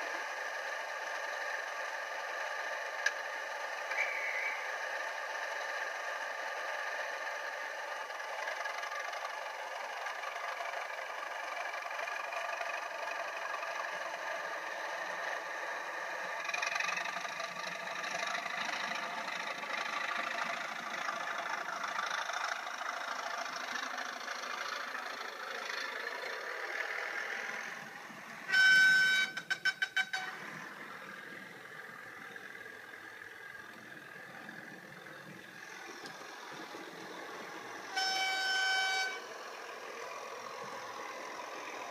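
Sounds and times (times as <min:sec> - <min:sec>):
diesel engine through small speaker: 0:00.0 - 0:41.9
loud horn blast: 0:28.5 - 0:30.4, 0:37.8 - 0:39.3
short horn toots: 0:28.5 - 0:30.4, 0:37.9 - 0:39.3.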